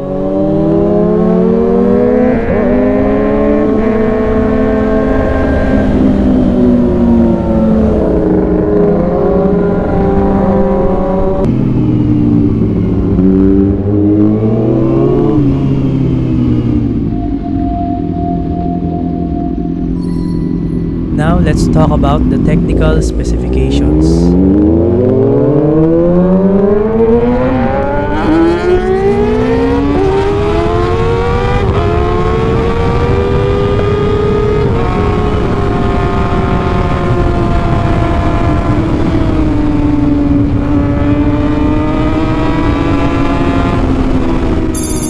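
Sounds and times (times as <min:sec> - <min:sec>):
motorcycle engine revving: 0:24.2 - 0:44.7.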